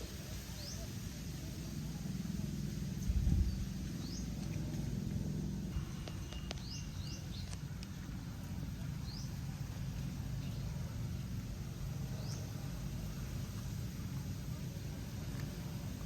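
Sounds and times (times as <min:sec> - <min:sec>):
bird chirps: 0:05.7 - 0:07.7.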